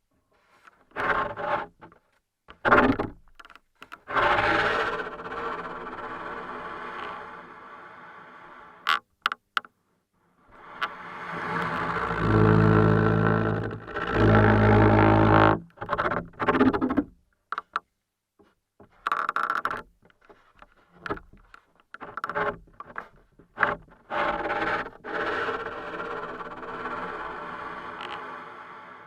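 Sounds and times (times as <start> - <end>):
creaking: 10.7 - 17.0.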